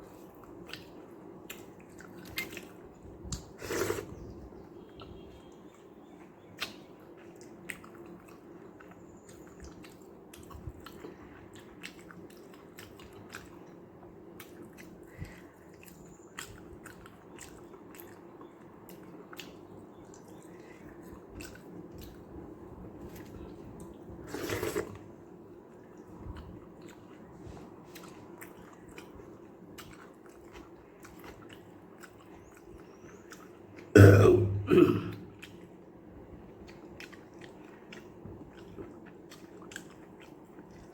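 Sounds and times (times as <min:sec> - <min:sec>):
wet chewing: 0:05.0 - 0:22.4, 0:23.0 - 0:40.9
man clearing throat: 0:34.0 - 0:35.3.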